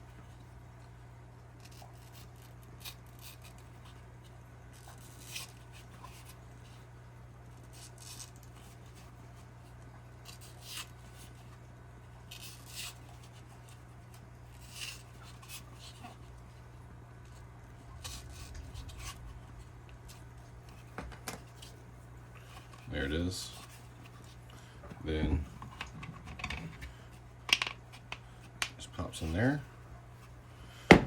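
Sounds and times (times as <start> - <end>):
steady low hum: 8.5 - 31.0.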